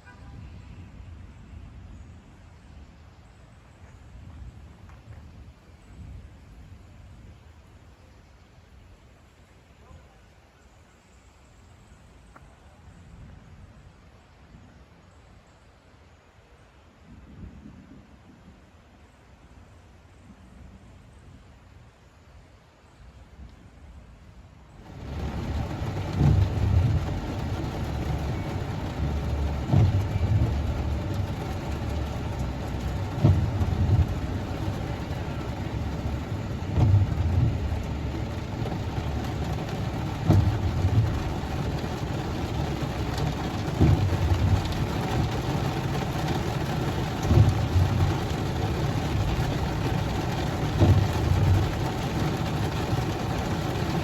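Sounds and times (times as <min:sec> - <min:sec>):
car road and engine noise: 0:24.7 - 0:54.0
low thump: 0:24.9 - 0:45.3.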